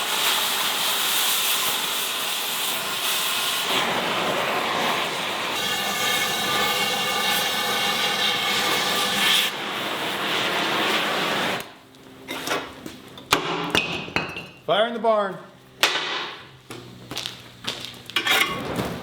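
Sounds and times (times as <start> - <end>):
cutting torch hissing: 0.0 - 12.5.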